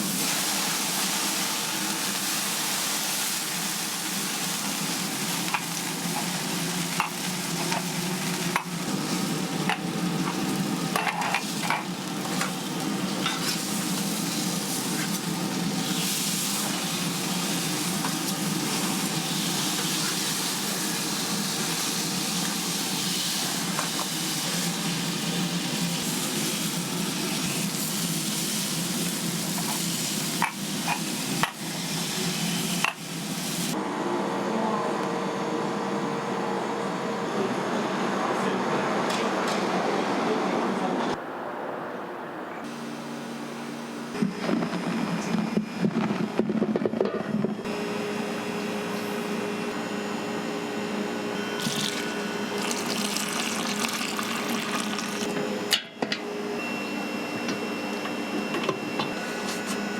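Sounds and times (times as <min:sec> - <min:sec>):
food frying with sizzle: 0:00.0 - 0:33.8, 0:51.6 - 0:55.4.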